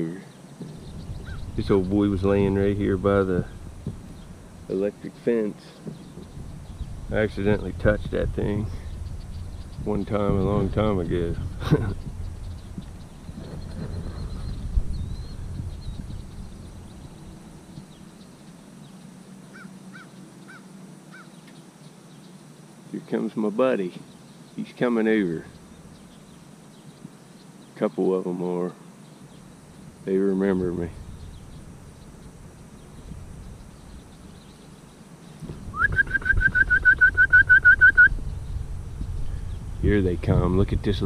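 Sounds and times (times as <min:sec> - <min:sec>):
bird calling in arched notes: 0:00.0 - 0:07.2, 0:08.5 - 0:22.8, 0:23.7 - 0:39.9
faint high bird chirping: 0:00.0 - 0:41.0
short high whistled notes: 0:35.7 - 0:38.1.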